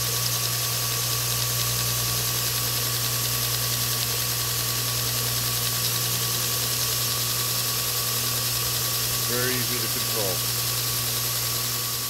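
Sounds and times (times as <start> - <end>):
electric motor hum: 0.0 - 12.0
abrasive belt hissing: 9.2 - 10.6.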